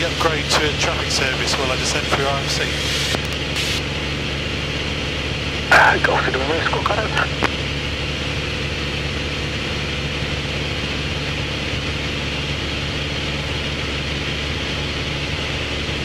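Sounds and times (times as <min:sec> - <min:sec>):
aircraft engine droning: 0:00.0 - 0:16.0.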